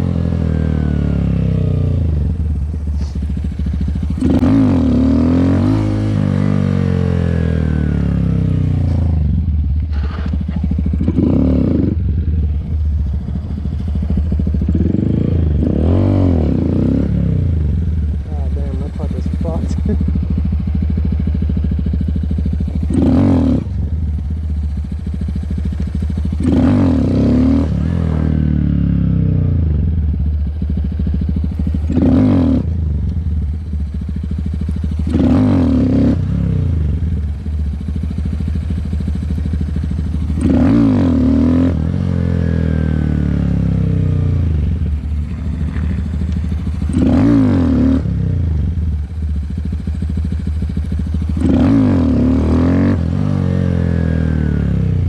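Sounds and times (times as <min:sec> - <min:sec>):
motorcycle engine revving hard: 0:00.0 - 0:55.0.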